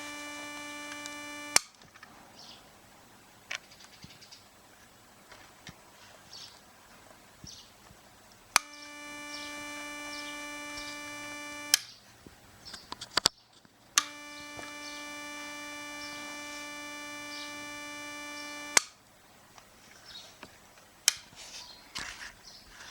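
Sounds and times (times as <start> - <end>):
metal detector low tone: 0.0 - 1.6, 8.6 - 11.8, 14.0 - 18.8
switch clicks: 0.0 - 1.7, 8.6 - 11.9, 14.0 - 18.9.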